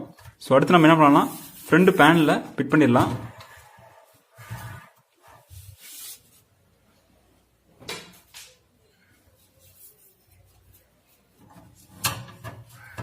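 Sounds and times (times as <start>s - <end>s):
rubbing scrapes: 3.3s - 6.5s.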